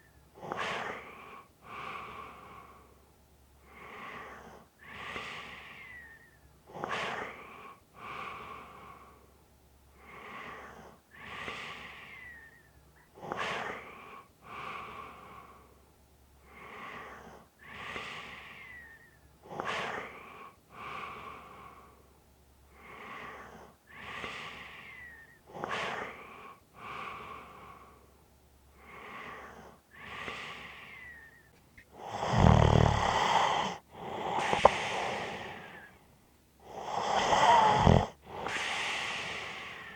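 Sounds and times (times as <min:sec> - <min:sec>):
person snoring: 0:31.9 - 0:36.0, 0:36.6 - 0:39.9.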